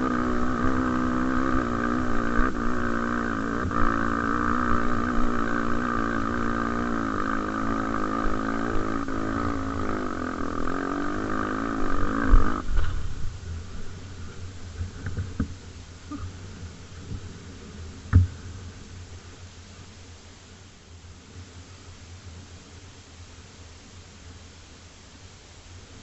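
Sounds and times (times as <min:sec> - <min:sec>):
motorcycle engine running: 0:00.0 - 0:18.7.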